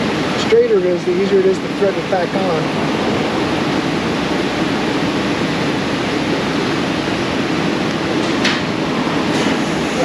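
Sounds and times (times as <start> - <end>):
loud steady rushing noise: 0.0 - 10.0.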